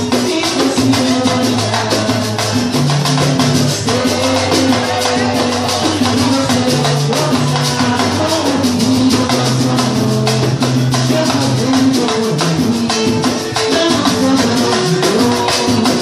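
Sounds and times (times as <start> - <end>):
samba drums: 0.0 - 16.0.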